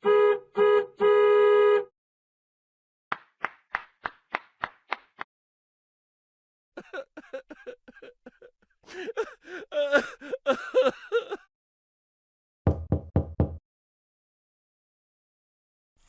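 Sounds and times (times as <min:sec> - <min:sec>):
comic giggles and laughter: 0:06.8 - 0:11.5.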